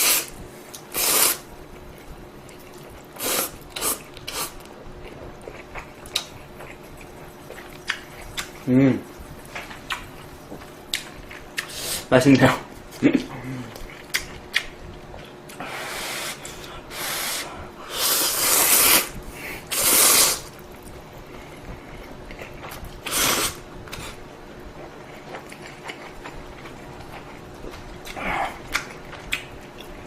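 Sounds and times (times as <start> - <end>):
person slurping noodles: 0.9 - 1.4, 3.2 - 4.5, 15.6 - 20.5, 23.0 - 24.1.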